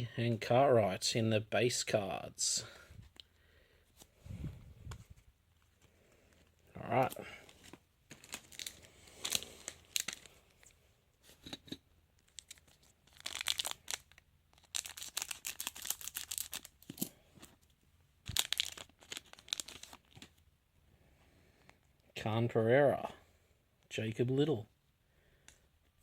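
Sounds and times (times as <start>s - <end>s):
card pack wrapper tearing: 6.9s - 10.4s, 12.2s - 17.2s, 18.3s - 20.4s.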